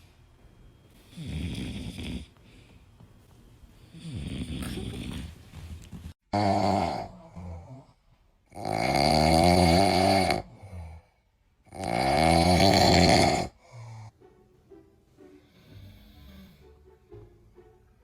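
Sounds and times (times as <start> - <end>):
loud snoring: 1.1 - 2.3, 3.9 - 5.1, 6.4 - 11.1, 11.7 - 13.6.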